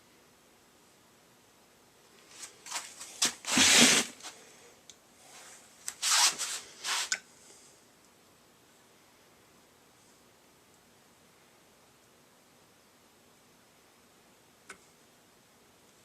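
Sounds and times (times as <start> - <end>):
rubbing and rustling: 2.2 - 4.4, 5.2 - 7.2.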